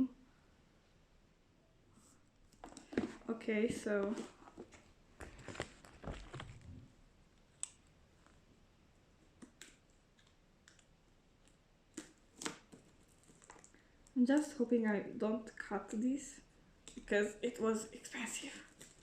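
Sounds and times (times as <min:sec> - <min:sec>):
packaging rustling and clicking: 0:02.5 - 0:06.8, 0:18.7 - 0:19.0.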